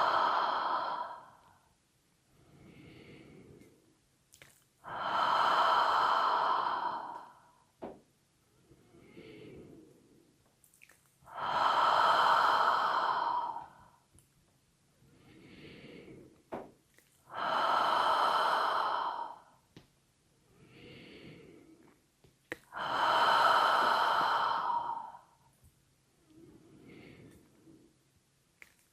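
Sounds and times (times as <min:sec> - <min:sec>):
long breathy exhalations: 0:00.0 - 0:03.9, 0:04.8 - 0:07.8, 0:08.5 - 0:10.4, 0:11.3 - 0:14.1, 0:17.2 - 0:19.7, 0:20.4 - 0:22.0, 0:22.6 - 0:25.6, 0:26.3 - 0:28.0
quiet in-breaths: 0:00.0 - 0:28.9.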